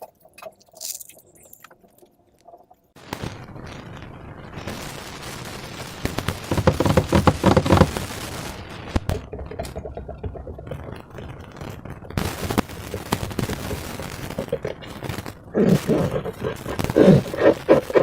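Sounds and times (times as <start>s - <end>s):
slime squelching and crackling: 0.0s - 2.7s, 6.2s - 18.0s.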